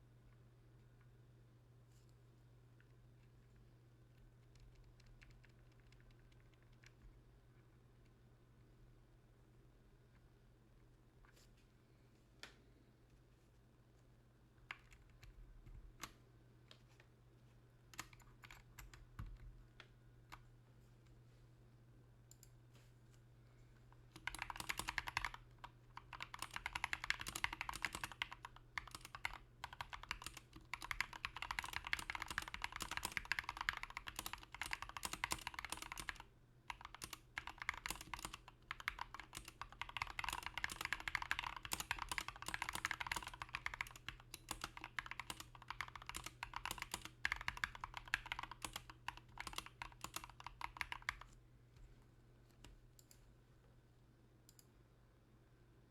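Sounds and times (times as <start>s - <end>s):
mechanical keyboard typing: 4.4s - 7.1s, 24.1s - 51.3s.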